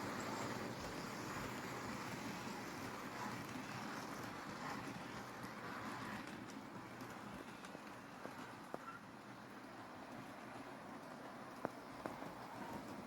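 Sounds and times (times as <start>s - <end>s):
model train rumbling on track: 0.0s - 13.0s.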